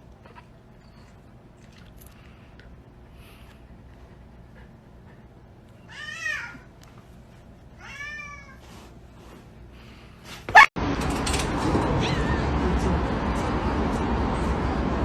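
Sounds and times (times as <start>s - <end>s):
cat meowing: 5.8s - 6.7s, 7.8s - 8.6s, 12.0s - 12.5s.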